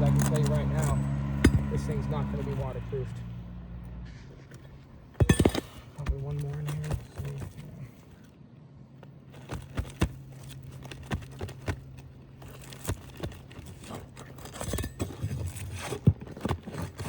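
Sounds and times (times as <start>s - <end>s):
tool prying at shingles: 0.0s - 2.4s, 4.5s - 7.6s, 9.3s - 17.0s
steady low hum: 0.0s - 9.3s.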